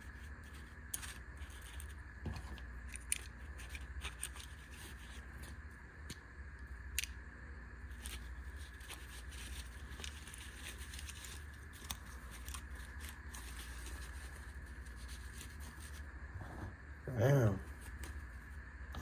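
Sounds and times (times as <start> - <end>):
steady low hum: 0.0 - 19.0
small items clicking and rustling: 0.5 - 5.2, 8.0 - 16.0.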